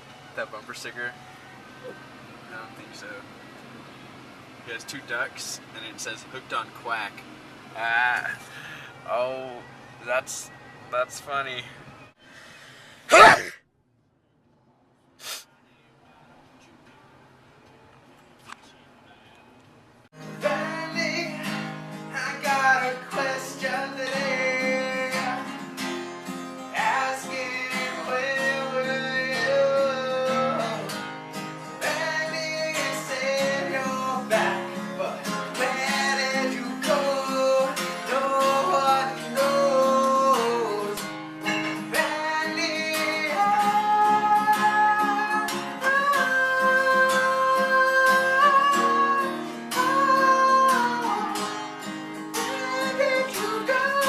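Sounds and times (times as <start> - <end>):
acoustic guitar strumming chords: 20.2 - 54.0.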